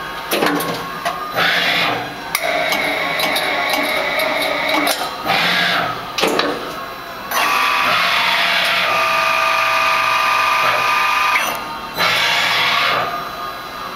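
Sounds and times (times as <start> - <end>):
drilling machine whining: 1.2 - 6.2, 7.3 - 13.9
machine clack: 1.5 - 6.6.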